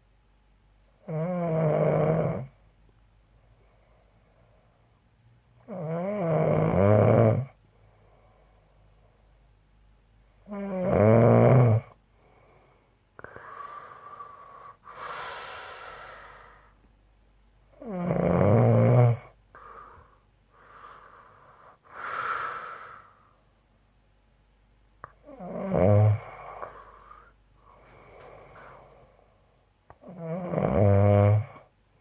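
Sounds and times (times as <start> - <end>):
man snoring loudly: 1.1 - 2.5, 5.7 - 7.6, 10.5 - 12.0, 17.8 - 19.3, 25.3 - 26.7, 30.0 - 31.7
breathy breaths with faint whistle: 12.2 - 16.8, 19.5 - 23.5, 26.4 - 29.5.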